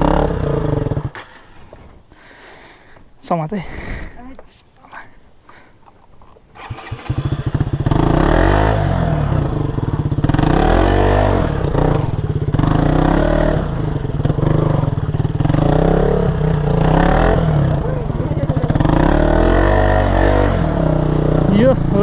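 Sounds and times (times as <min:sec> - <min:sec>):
motorcycle engine revving: 0:00.0 - 0:01.5, 0:06.5 - 0:22.0.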